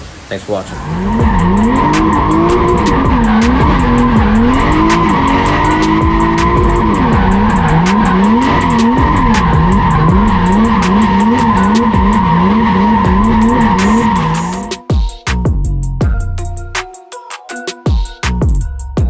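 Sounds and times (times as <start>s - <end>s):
tyres squealing: 0.0s - 14.7s
car engine revving: 0.0s - 14.8s.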